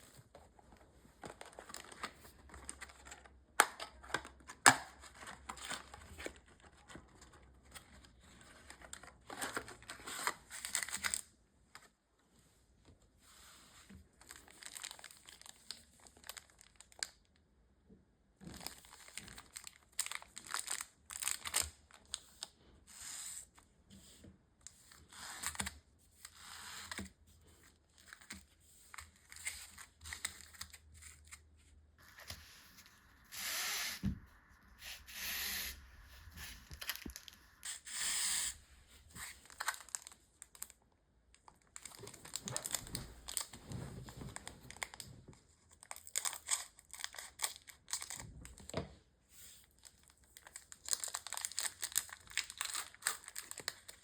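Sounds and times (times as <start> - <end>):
foil wrapper crinkling: 14.2 - 17.1, 39.2 - 40.8, 49.8 - 54.0
foil wrapper tearing: 50.5 - 54.0.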